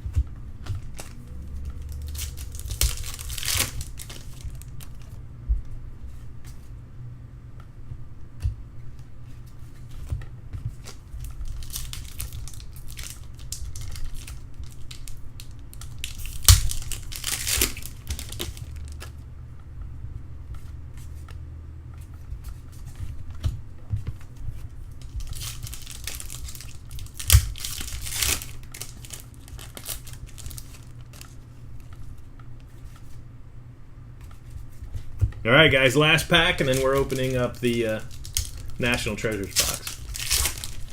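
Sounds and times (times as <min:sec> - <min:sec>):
steady low hum: 0:00.0 - 0:40.9
card pack wrappers tearing: 0:00.8 - 0:05.2, 0:10.8 - 0:19.1, 0:24.9 - 0:31.4, 0:35.5 - 0:40.9.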